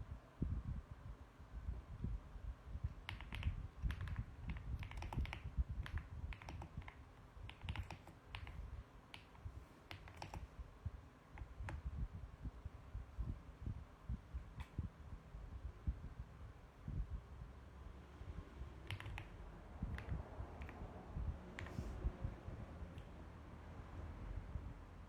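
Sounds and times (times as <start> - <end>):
mechanical keyboard typing: 2.9 - 10.5, 18.8 - 20.9.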